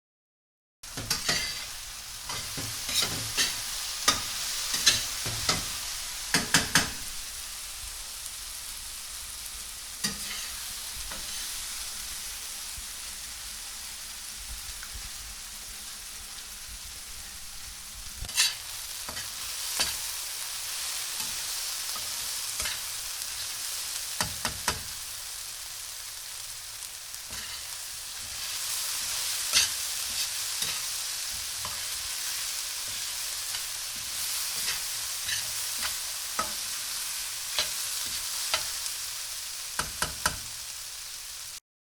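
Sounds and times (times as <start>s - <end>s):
onions sizzling in a pan: 0.8s - 41.6s
utensil scraping and knocking pan: 1.0s - 1.7s.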